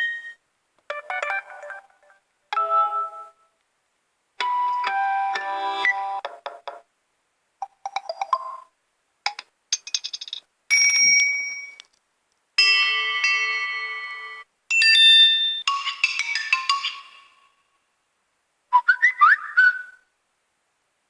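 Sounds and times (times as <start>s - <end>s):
phone notification tones: 0.9s - 3.5s.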